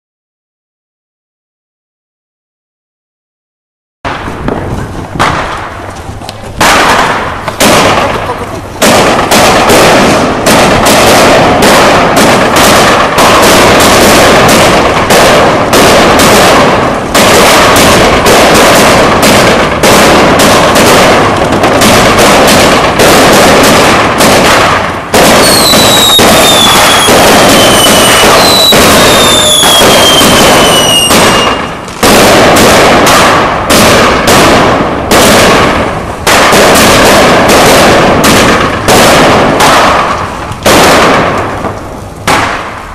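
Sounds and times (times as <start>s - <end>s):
firework crackling: 4.1s - 42.9s
firework launch shots: 4.1s - 42.9s
falling firework whistles: 25.3s - 31.8s.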